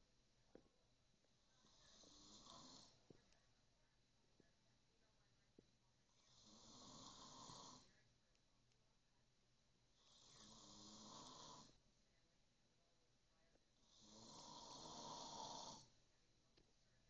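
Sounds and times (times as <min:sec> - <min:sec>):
man snoring: 0:01.6 - 0:03.0, 0:06.2 - 0:07.9, 0:10.0 - 0:11.8, 0:13.8 - 0:15.9.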